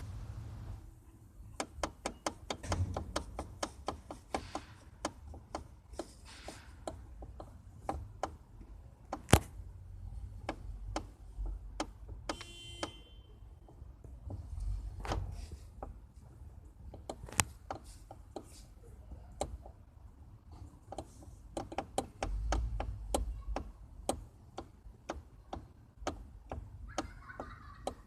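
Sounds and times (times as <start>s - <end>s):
low steady rumble: 0.0s - 1.5s
steering column knocking: 1.6s - 8.5s, 20.9s - 28.0s.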